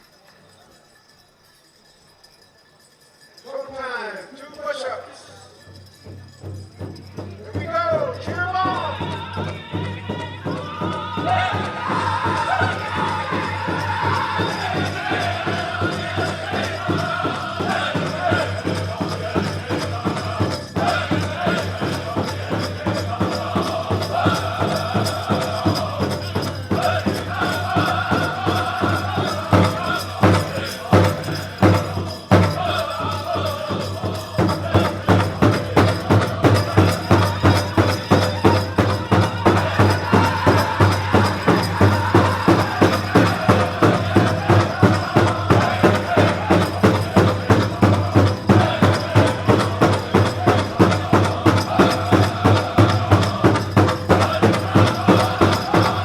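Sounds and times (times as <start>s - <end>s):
drum group singing: 5.5s - 56.0s
big drum beating: 8.2s - 56.0s.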